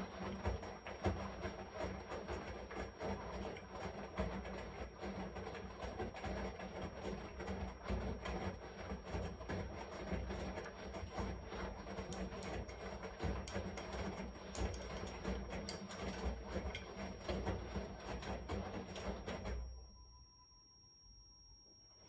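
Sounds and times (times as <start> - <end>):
washing machine running: 0.0 - 19.9.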